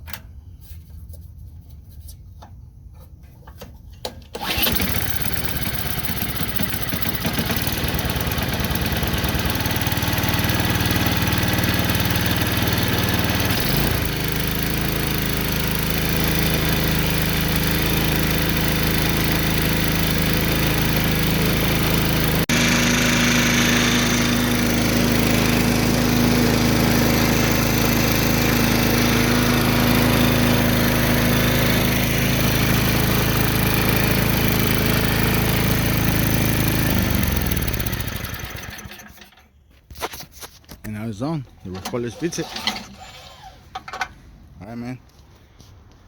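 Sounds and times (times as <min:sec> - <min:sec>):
snowblower engine running: 0:04.4 - 0:39.4.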